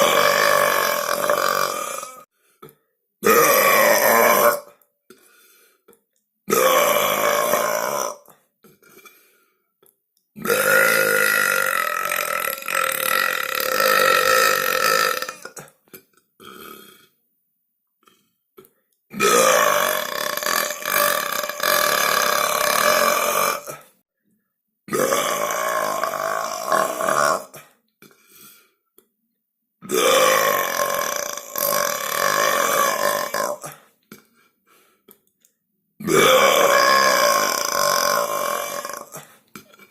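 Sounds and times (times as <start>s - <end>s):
loud drawn-out burps: 0.0s - 2.3s, 3.2s - 4.8s, 6.5s - 9.2s, 10.4s - 17.2s, 18.0s - 24.0s, 24.9s - 27.8s, 29.8s - 34.3s, 36.0s - 39.9s.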